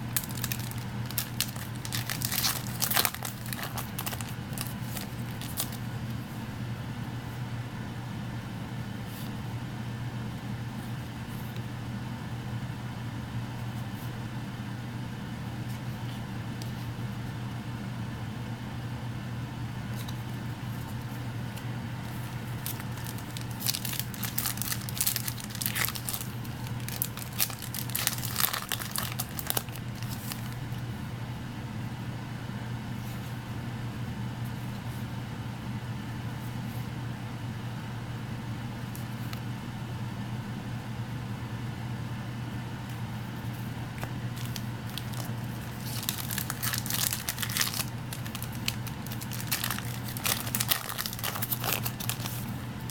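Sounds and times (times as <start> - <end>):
foil wrappers crinkling and tearing: 0.0 - 5.8, 22.1 - 30.6, 44.0 - 52.9
steady low hum: 0.0 - 52.9.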